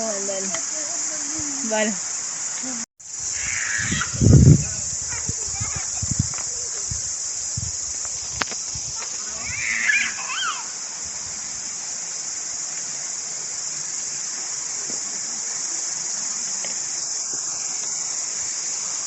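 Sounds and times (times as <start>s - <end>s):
mountain stream rushing: 0.0s - 19.0s.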